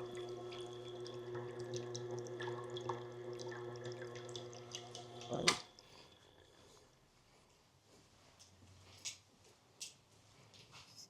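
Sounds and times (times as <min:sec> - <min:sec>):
electric motor humming: 0:00.0 - 0:06.6.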